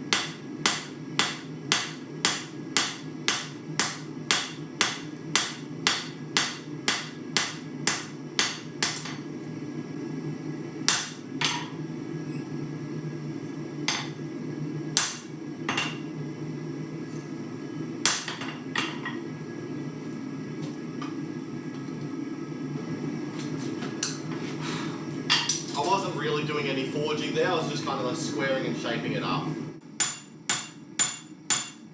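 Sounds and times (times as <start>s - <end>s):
hammer striking steel on anvil: 0.1s - 9.2s, 10.9s - 11.8s, 15.0s - 16.1s, 18.0s - 19.0s, 30.0s - 31.9s.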